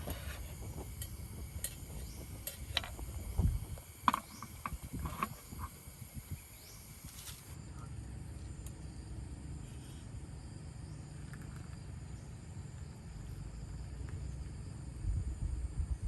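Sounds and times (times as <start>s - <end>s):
insects chirping: 0.0s - 16.0s.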